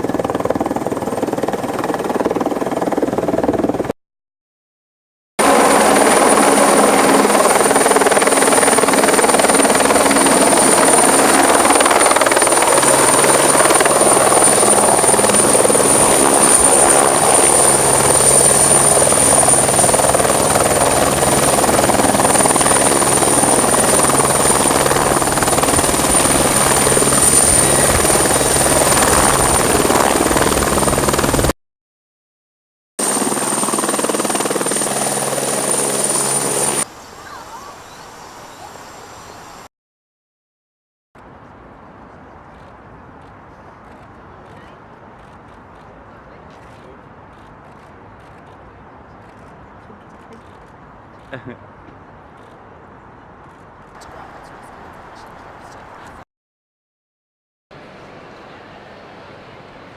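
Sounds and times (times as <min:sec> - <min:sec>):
helicopter rotor and engine noise: 0:00.0 - 0:03.9, 0:05.4 - 0:31.5, 0:33.0 - 0:39.7
high turbine whine: 0:05.4 - 0:31.5.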